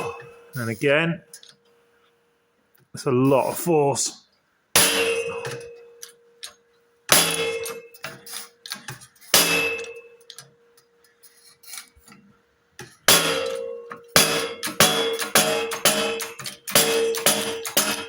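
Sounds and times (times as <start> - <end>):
hammer clanging on steel: 0.0 - 0.9, 4.8 - 10.4, 12.9 - 18.0.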